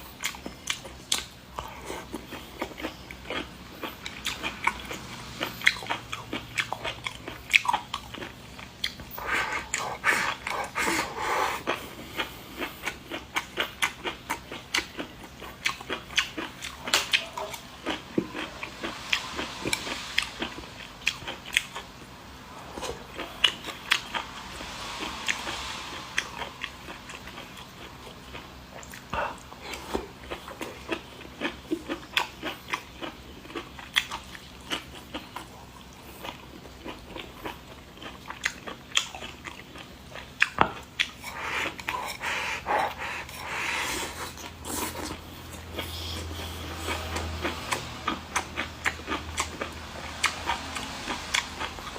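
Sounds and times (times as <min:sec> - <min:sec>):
person chewing and biting food: 0:00.1 - 0:51.9
airy hissing: 0:18.0 - 0:30.0.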